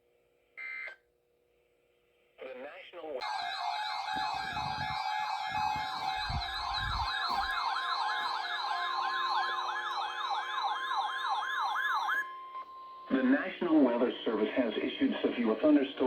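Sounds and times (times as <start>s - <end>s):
electronic siren yelping: 3.2s - 12.6s
steady high tone: 3.2s - 13.0s.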